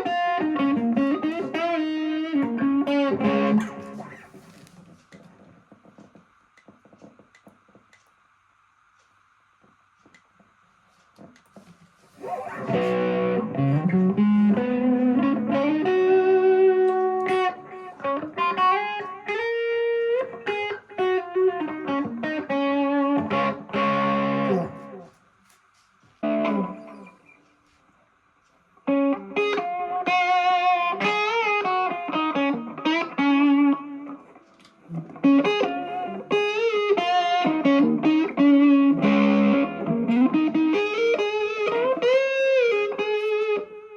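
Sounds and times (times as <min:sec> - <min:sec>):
electric guitar melody: 0:00.0 - 0:04.3, 0:12.2 - 0:25.1, 0:26.2 - 0:27.4, 0:28.8 - 0:43.9
faint amp hum: 0:00.0 - 0:43.9.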